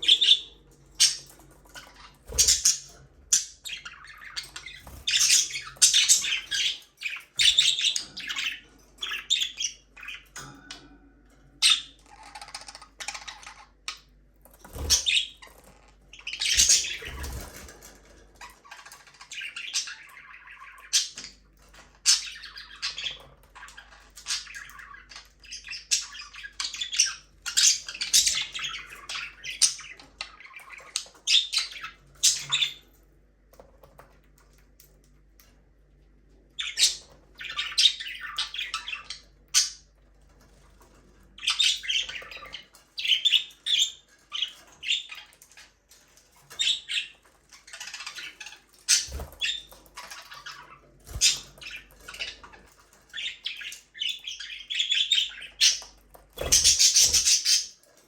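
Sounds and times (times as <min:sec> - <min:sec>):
budgerigars chirping: 0:00.0 - 0:10.4, 0:14.7 - 0:17.6, 0:18.6 - 0:21.4, 0:22.0 - 0:32.8, 0:36.6 - 0:39.8, 0:41.4 - 0:45.7, 0:46.5 - 0:57.8.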